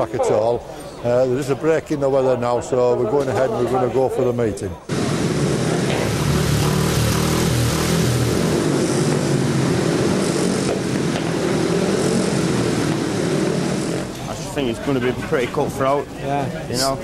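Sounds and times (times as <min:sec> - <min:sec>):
motorcycle engines revving loudly: 0:04.9 - 0:16.0.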